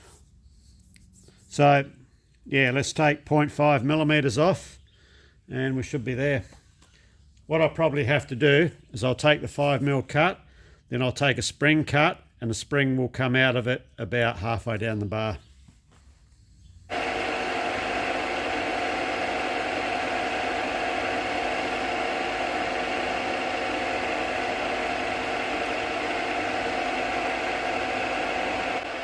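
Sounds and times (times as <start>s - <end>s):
metal lathe running: 16.9s - 29.0s.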